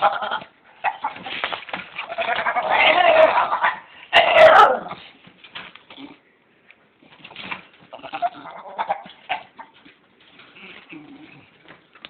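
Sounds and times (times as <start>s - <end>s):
pet animal vocal noises: 0.0s - 5.1s, 7.9s - 11.7s.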